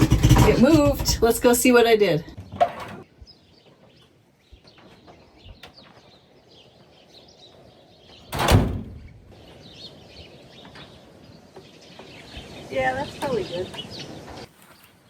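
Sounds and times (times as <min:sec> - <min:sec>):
faint birds chirping: 0:00.0 - 0:15.0
truck door shutting: 0:08.3 - 0:09.2.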